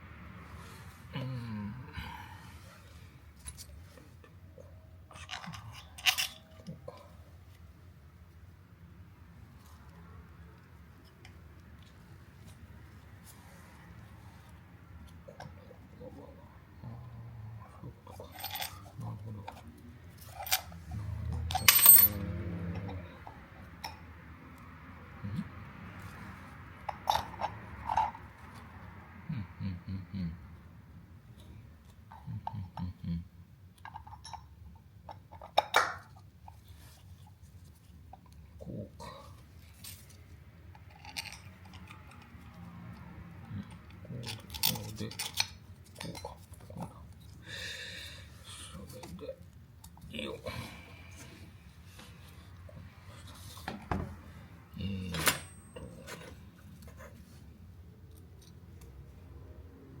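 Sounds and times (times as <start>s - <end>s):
metal parts clicking and clinking: 5.1s - 6.8s, 18.1s - 19.6s, 20.2s - 23.0s, 39.6s - 42.6s, 43.6s - 46.6s.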